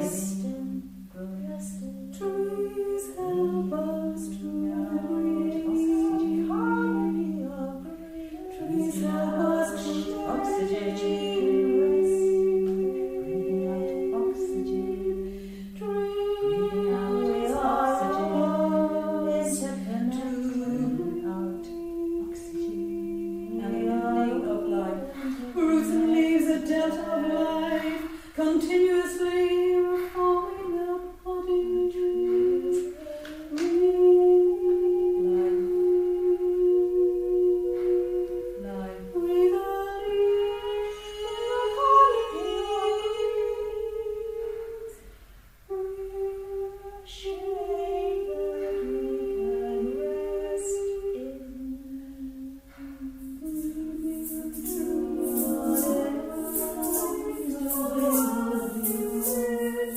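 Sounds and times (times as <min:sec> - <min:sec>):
voices singing held notes: 0:00.0 - 0:59.9
percussion rattle: 0:52.6 - 0:59.9.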